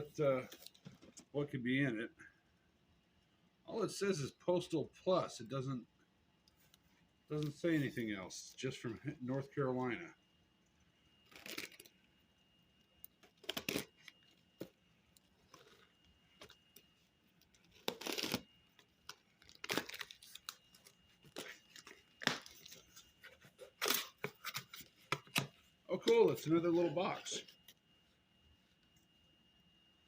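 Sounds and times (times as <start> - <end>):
packaging tearing and crinkling: 11.2 - 11.9, 13.2 - 14.7, 17.5 - 22.9, 23.6 - 25.5.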